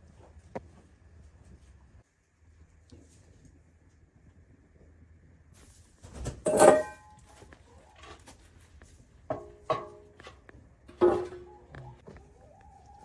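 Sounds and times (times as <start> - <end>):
low steady hum: 0.0 - 13.0
metallic clanks: 6.4 - 7.2.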